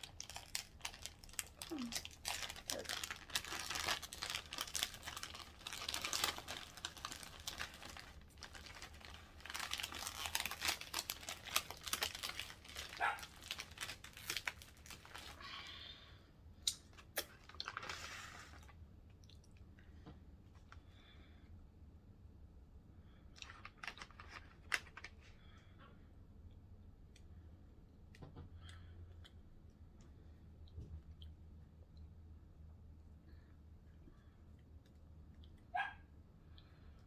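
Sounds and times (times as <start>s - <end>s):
paper wrapping crinkling: 0.0s - 15.5s, 23.4s - 25.2s.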